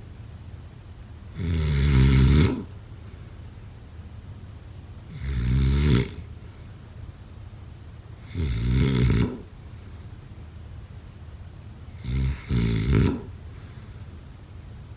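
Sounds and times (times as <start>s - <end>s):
loud snoring: 1.3s - 2.7s, 5.1s - 6.3s, 8.2s - 9.5s, 11.9s - 13.4s.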